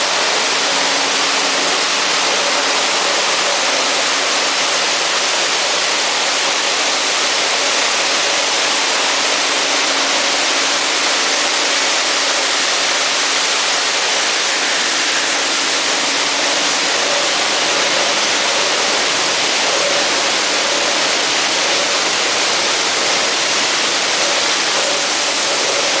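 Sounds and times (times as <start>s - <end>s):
loud rushing like flowing water: 0.0s - 26.0s.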